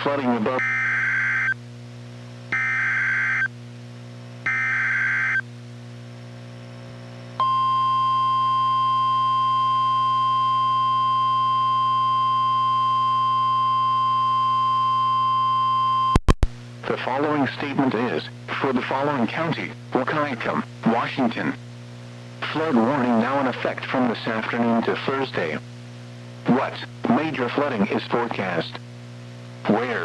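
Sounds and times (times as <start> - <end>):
warning alarm tone: 4.5 - 5.4.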